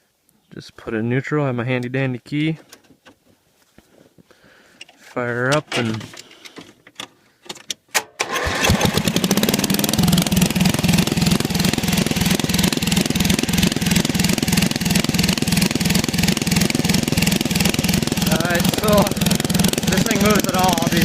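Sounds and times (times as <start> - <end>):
lawnmower engine running: 8.2 - 21.0.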